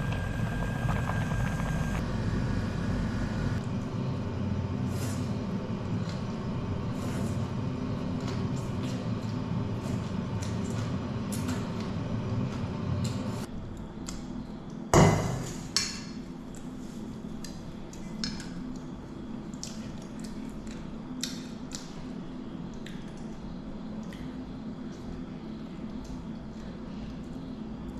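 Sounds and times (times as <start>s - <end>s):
steady low hum: 0.0s - 27.9s.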